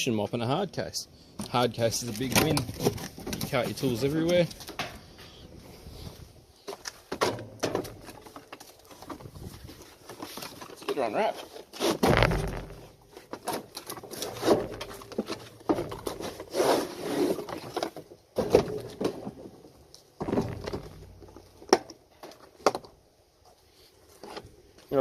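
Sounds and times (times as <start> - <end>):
rustling and crinkling packaging: 1.6 - 5.0, 7.8 - 18.2.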